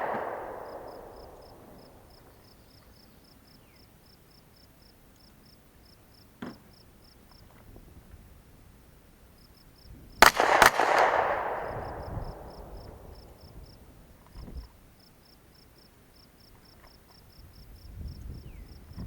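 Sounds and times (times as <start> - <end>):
gunshots with rolling echo: 0.0 - 2.4, 10.2 - 13.8.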